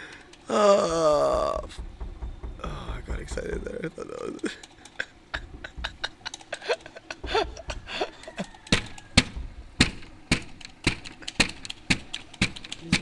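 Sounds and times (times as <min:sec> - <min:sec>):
sharp knocks: 0:01.3 - 0:04.0, 0:05.4 - 0:06.3, 0:08.6 - 0:13.0.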